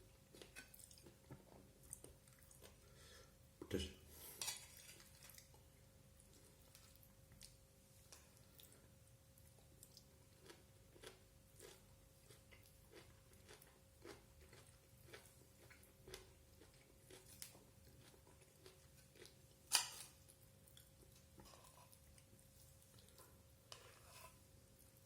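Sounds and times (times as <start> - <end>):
person chewing: 0.2 - 2.9, 6.2 - 25.0.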